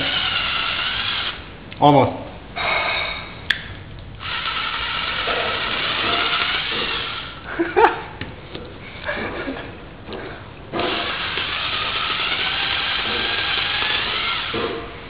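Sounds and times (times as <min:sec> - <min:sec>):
power drill spinning: 0:00.0 - 0:01.5, 0:04.2 - 0:07.5, 0:10.7 - 0:14.8.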